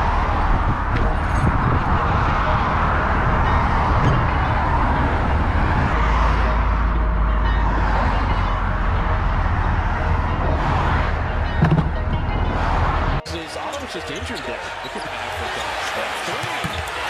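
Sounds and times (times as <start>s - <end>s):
road and tyre rumble: 0.0s - 13.2s
vehicle engine hum: 0.0s - 13.2s.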